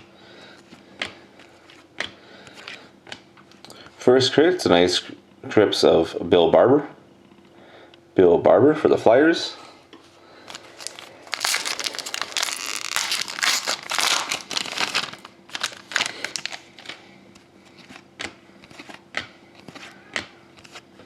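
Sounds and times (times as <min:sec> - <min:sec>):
wrapper crinkling and tearing: 0:10.5 - 0:17.0.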